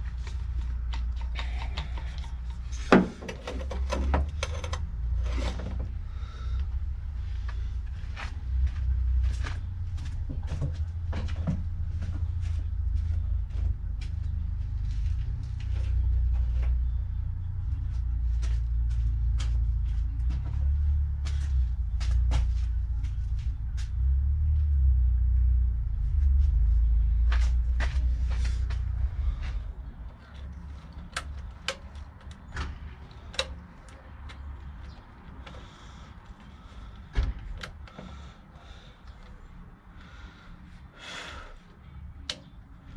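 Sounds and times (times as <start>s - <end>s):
sharp clicks and knocks: 0.0s - 5.9s, 30.0s - 35.7s
steady low rumble: 0.0s - 42.9s.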